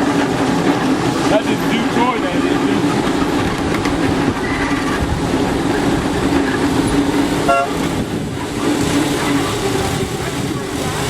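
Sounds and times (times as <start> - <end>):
train rumbling: 0.0 - 11.0
train horn toot: 7.4 - 7.9.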